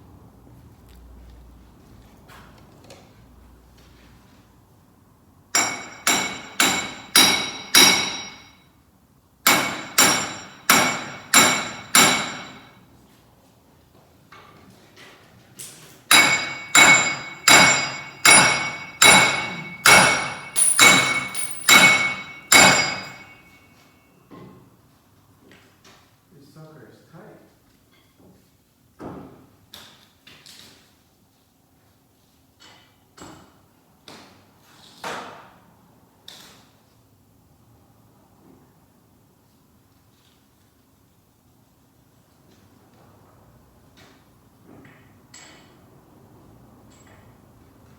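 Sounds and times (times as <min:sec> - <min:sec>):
hammer ringing on steel: 0:05.6 - 0:08.6, 0:09.5 - 0:12.8, 0:16.1 - 0:23.8.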